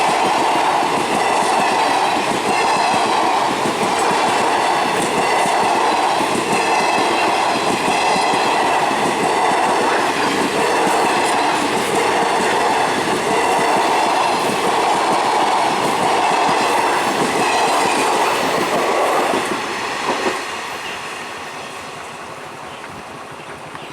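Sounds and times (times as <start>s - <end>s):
train wheels clattering: 0.0s - 21.1s.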